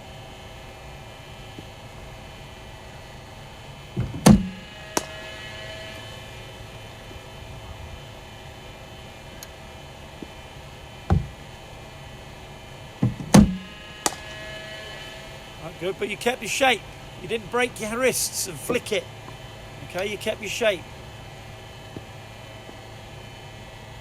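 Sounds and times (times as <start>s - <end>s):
steady hum: 0.0s - 24.0s
bowling machine thud: 4.0s - 4.6s, 13.0s - 14.2s
sharp crack of bat: 13.4s - 14.4s.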